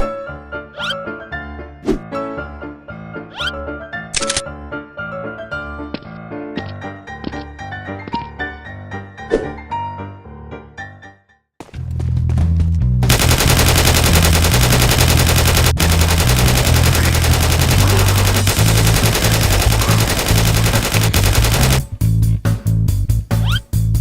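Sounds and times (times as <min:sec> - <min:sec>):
rapid automatic gunfire: 0:13.0 - 0:21.9
background music with bass line: 0:21.0 - 0:24.0.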